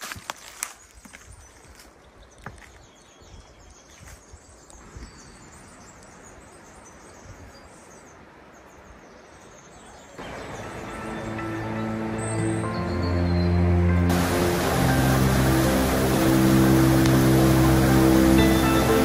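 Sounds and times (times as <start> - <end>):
rushing flowing water: 10.2 - 19.0.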